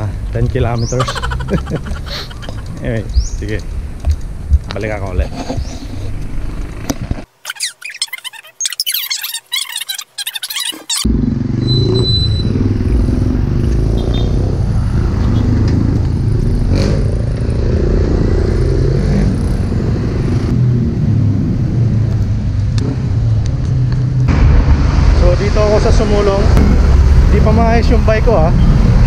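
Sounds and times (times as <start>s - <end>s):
road traffic noise: 0.0s - 29.0s
wind rumbling on microphone: 2.4s - 7.3s.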